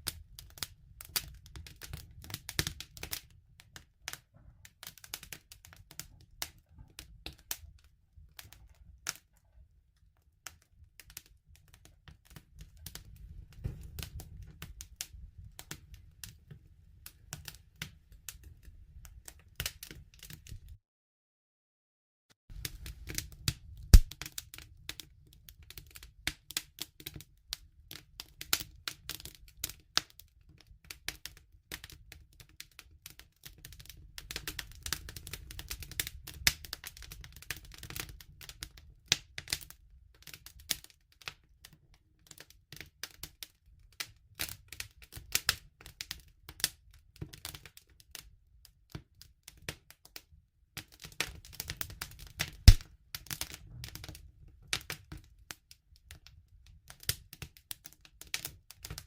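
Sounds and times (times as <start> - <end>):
campfire crackling: 22.6 - 25.0, 51.4 - 54.1.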